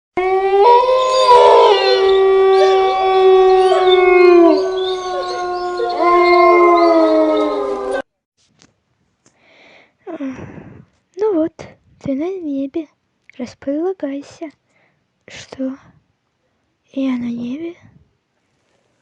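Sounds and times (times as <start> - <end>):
dogs howling: 0.2 - 8.1.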